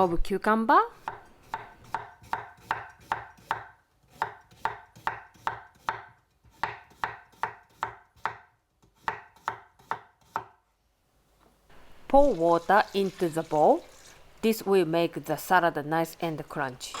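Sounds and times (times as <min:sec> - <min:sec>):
knife slicing cucumber on board: 0:01.0 - 0:10.6.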